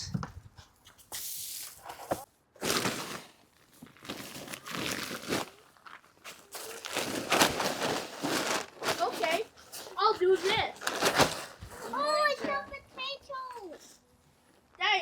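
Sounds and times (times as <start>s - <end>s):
dry plants rustling and crunching: 2.5s - 11.9s.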